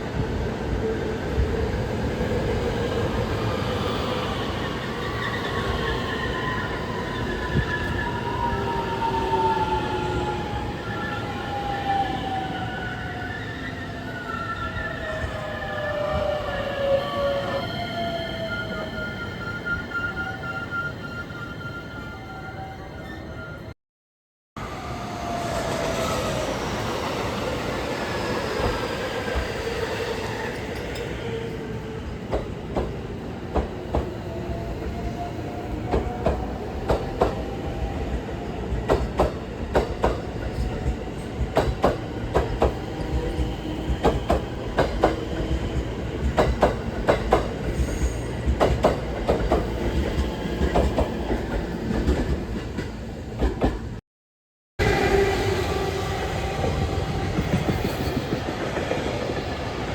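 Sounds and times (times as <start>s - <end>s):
train whine: 54.8s - 59.9s.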